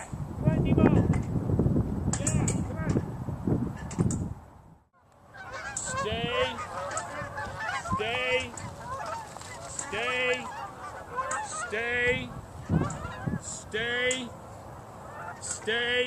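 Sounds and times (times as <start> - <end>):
geese honking: 5.0 - 16.0.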